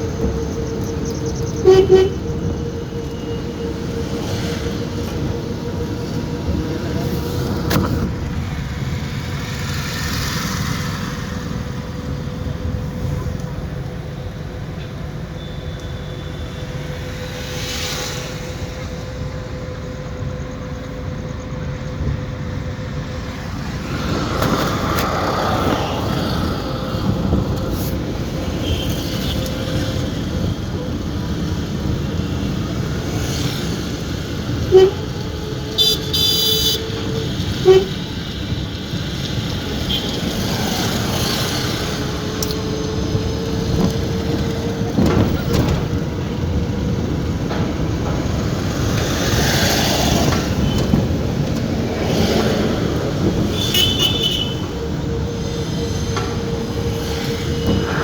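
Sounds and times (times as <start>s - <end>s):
car engine and road noise: 0.0s - 58.0s
car horns honking: 1.3s - 2.4s, 34.6s - 35.2s, 35.8s - 38.2s, 53.4s - 54.9s.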